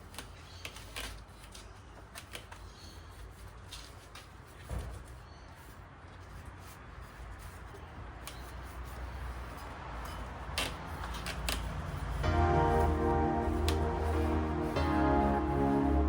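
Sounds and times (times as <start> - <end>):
workshop rustling and rubbing: 0.0 - 16.0
background music: 12.2 - 16.0.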